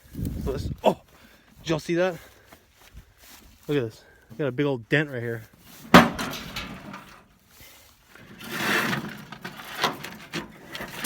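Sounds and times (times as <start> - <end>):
metal grill scraping: 5.6 - 7.2, 8.2 - 11.0.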